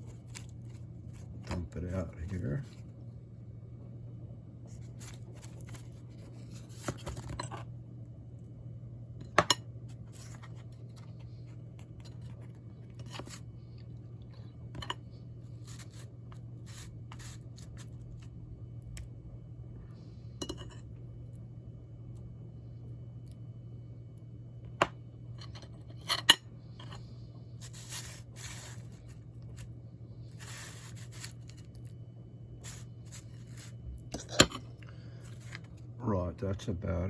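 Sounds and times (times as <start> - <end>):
steady low hum: 0.0 - 37.0
utensil scraping a dish: 25.4 - 29.7, 30.3 - 31.8, 32.6 - 35.7.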